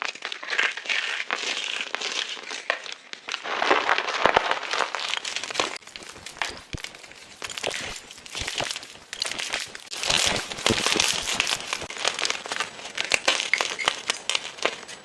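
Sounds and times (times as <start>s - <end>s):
chalk crunching and crumbling: 0.0s - 15.0s.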